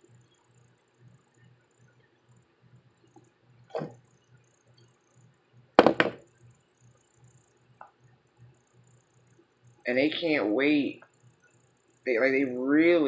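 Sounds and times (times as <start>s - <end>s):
quick double knock: 5.8s - 6.2s.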